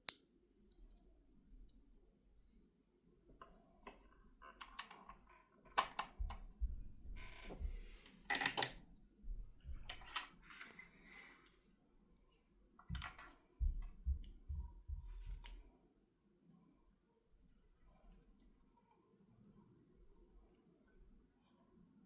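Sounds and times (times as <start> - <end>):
sewing machine parts clicking: 8.3 - 8.8.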